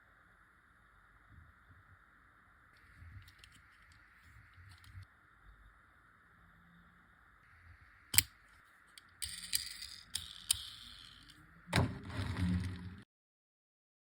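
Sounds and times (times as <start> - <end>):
toy car clicks and rattles: 8.9 - 11.4.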